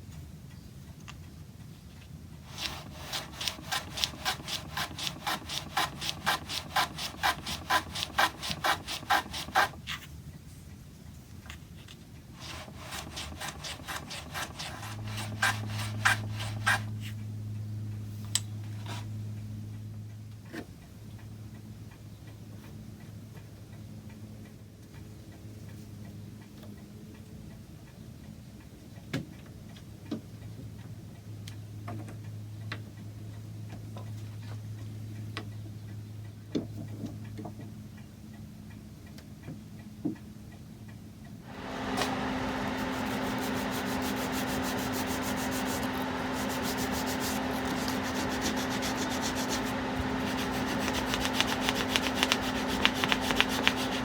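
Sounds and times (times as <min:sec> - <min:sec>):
hand saw cutting wood: 0:02.5 - 0:10.0, 0:12.4 - 0:16.9, 0:41.5 - 0:54.0
low steady hum: 0:41.2 - 0:54.0.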